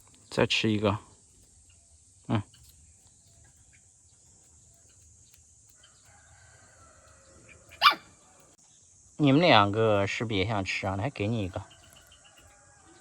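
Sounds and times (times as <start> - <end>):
short sharp bird call: 7.8 - 8.0.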